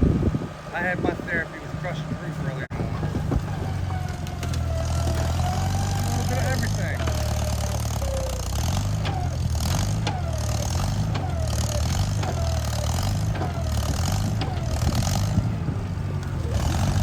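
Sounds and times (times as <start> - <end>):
diesel engine revving: 0.0 - 17.0
metallic squeal and knock: 3.2 - 15.6.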